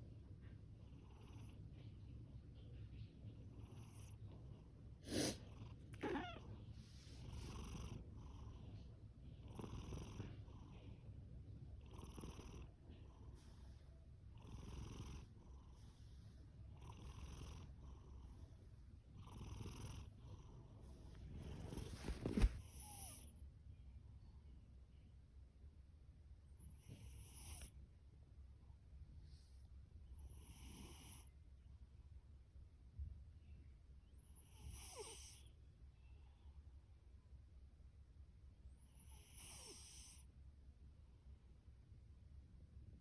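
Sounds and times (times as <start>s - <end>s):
cat purring: 0.8s - 23.3s
cat snoring hiss: 5.0s - 8.8s, 9.4s - 10.8s, 11.8s - 23.3s, 26.7s - 27.8s, 30.2s - 31.3s, 34.3s - 35.5s, 38.9s - 40.3s.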